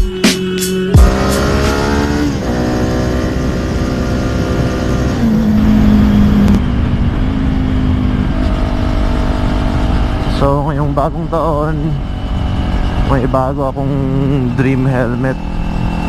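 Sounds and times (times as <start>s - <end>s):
music: 0.0s - 2.2s
motorcycle engine accelerating: 0.0s - 16.0s
wind rumble on microphone: 4.4s - 16.0s.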